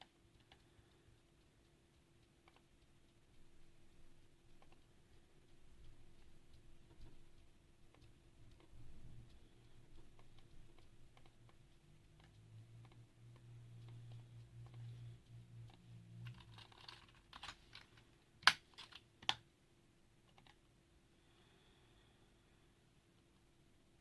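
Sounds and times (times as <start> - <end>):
mechanical keyboard typing: 1.4 - 3.2, 15.7 - 19.4, 20.2 - 20.6.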